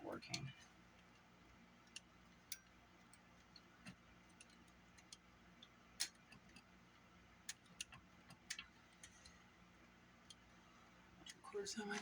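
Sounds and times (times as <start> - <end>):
small parts and tools clicking: 0.3 - 6.7.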